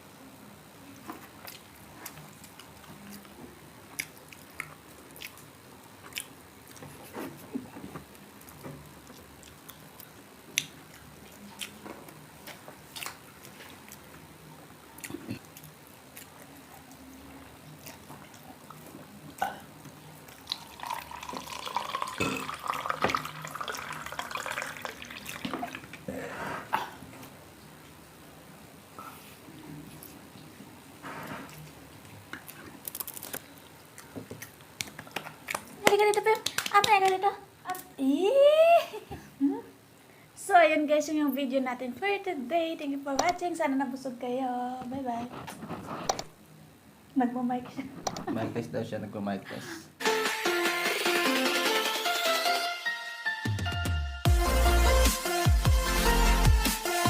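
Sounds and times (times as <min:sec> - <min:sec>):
crunchy eating and chewing: 0:00.9 - 0:28.0, 0:29.0 - 0:35.8.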